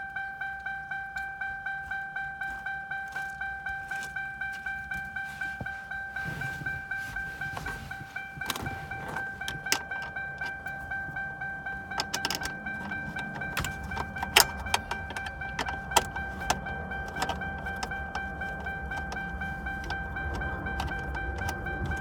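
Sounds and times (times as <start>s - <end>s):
car warning chime beeping: 0.0s - 22.0s
sharp metallic clicks: 7.6s - 22.0s.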